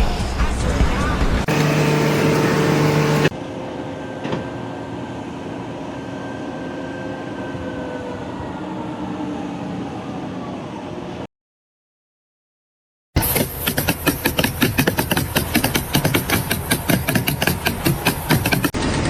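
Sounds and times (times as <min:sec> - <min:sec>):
machinery noise: 0:01.5 - 0:03.3
loud steady hum: 0:01.5 - 0:06.0.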